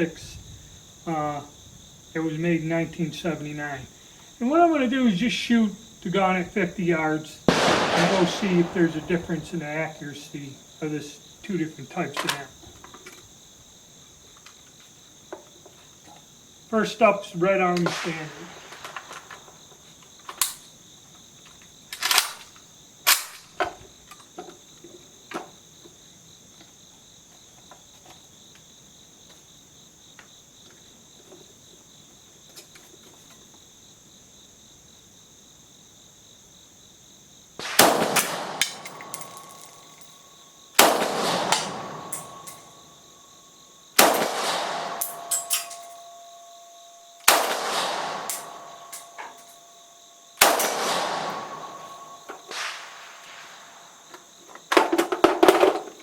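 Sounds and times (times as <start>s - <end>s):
rifle shots with echo: 7.5s - 10.2s, 17.8s - 19.6s, 37.6s - 43.1s, 44.0s - 49.8s, 50.4s - 54.0s.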